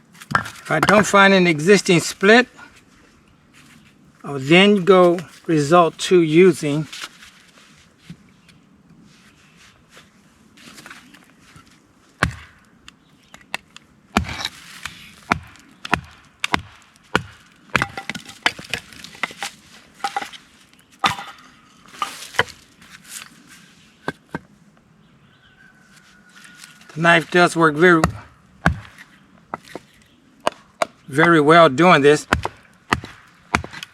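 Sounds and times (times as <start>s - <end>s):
knife knocking into firewood: 15.3s - 20.3s, 21.0s - 21.4s.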